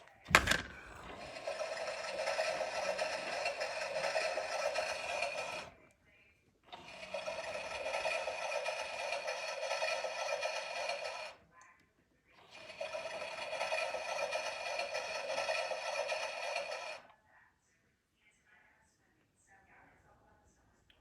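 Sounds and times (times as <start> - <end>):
washing machine running: 0.0 - 5.8, 6.7 - 11.4, 12.4 - 17.1.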